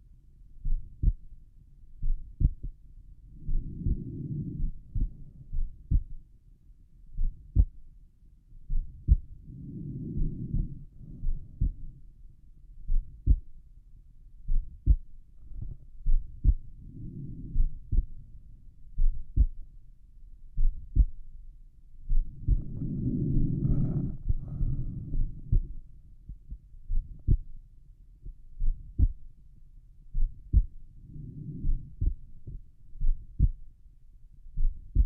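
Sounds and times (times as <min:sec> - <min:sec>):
soft low rushing sound: 0:00.5 - 0:33.8
heartbeat: 0:00.6 - 0:01.4, 0:02.0 - 0:06.3, 0:07.1 - 0:07.9, 0:08.6 - 0:12.1, 0:12.8 - 0:13.6, 0:14.5 - 0:19.7, 0:20.6 - 0:21.3, 0:22.0 - 0:27.6, 0:28.2 - 0:29.3, 0:30.1 - 0:33.8, 0:34.6 - 0:35.0.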